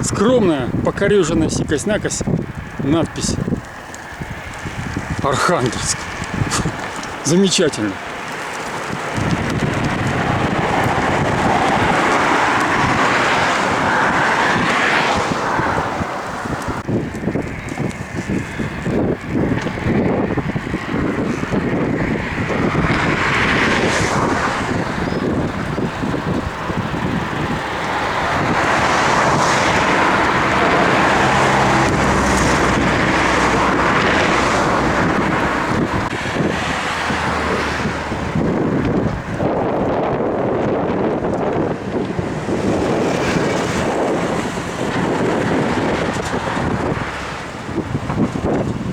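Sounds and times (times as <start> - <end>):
vehicle road and wind noise: 0.0 - 48.9
low engine hum: 1.5 - 48.9.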